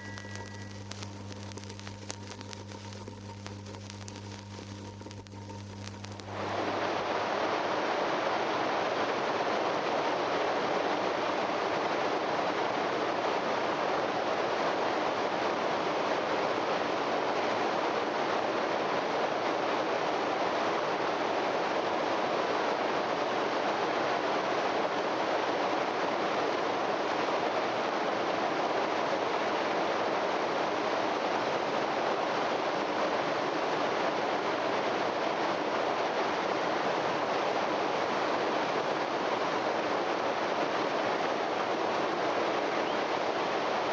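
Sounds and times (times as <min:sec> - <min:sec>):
vinyl hiss: 0:00.0 - 0:43.9.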